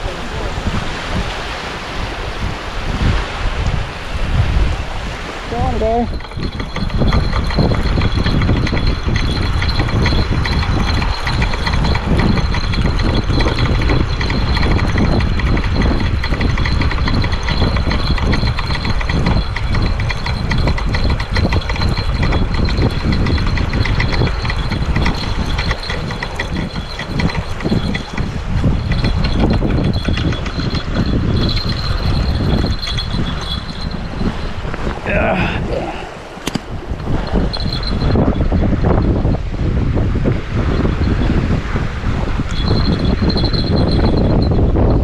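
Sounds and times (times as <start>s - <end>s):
wind buffeting microphone: 0.0s - 45.0s
fishing reel ticking: 5.6s - 35.5s, 36.4s - 39.4s, 42.4s - 45.0s.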